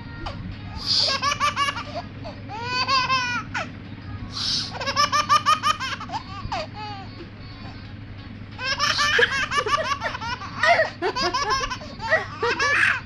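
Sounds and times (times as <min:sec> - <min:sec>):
baby giggling: 0:00.8 - 0:03.7, 0:04.4 - 0:07.1, 0:08.6 - 0:13.0.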